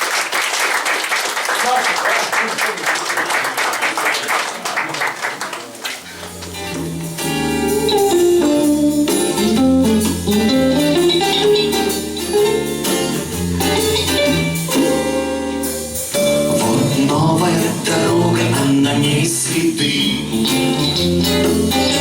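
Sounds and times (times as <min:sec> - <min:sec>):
audience applause: 0:00.0 - 0:06.6
live band playing: 0:05.4 - 0:22.0.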